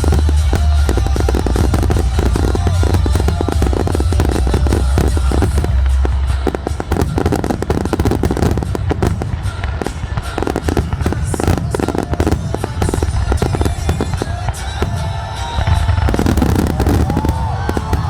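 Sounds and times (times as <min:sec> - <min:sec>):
heavy low rumble: 0:00.0 - 0:06.9
fireworks bangs and crackles: 0:00.0 - 0:18.0.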